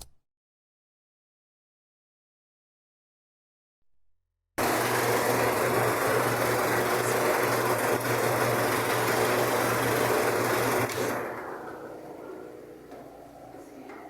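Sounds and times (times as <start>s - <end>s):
motor humming: 4.6s - 14.0s.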